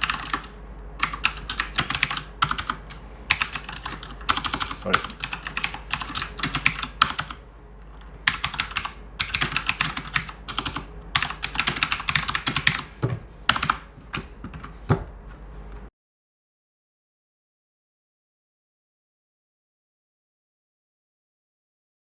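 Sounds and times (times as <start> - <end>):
mechanical keyboard typing: 0.0 - 7.4, 8.2 - 14.7.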